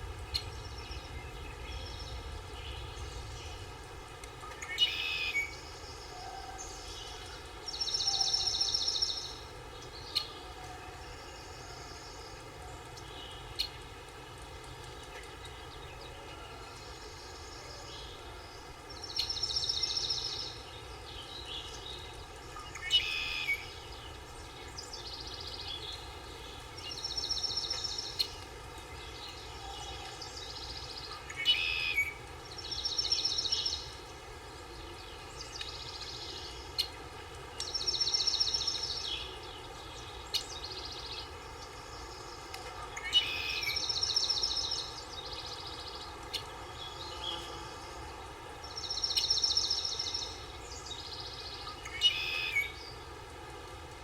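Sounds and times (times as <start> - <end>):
songbird trilling: 4.6 - 5.7, 31.3 - 33.9, 43.0 - 46.5, 51.1 - 52.9.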